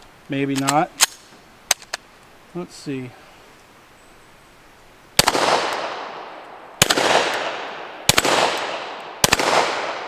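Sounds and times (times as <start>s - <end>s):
pistol shots with echo: 5.2s - 10.0s.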